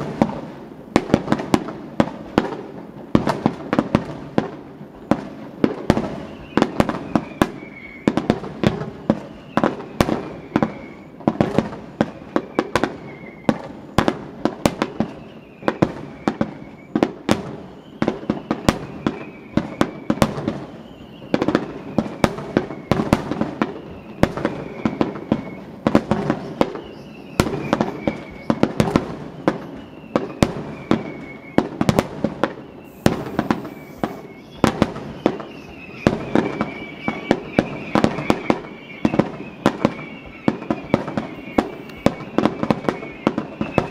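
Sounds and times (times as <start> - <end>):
faint falling whistle: 5.9 - 43.9
firework shell bursts: 12.4 - 43.9.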